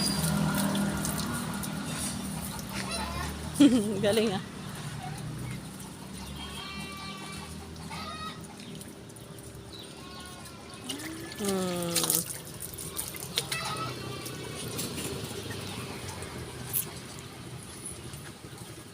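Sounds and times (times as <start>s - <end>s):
water sloshing and splashing: 0.0s - 18.9s.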